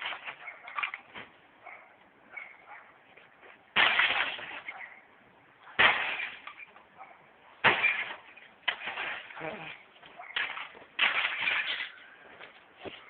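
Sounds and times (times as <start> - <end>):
glass and plastic breaking: 3.8 - 4.6, 5.8 - 6.7, 7.6 - 9.4, 10.4 - 12.0
heavy blows smashing a television: 3.8 - 4.6, 5.8 - 6.5, 7.6 - 9.4, 10.4 - 11.9.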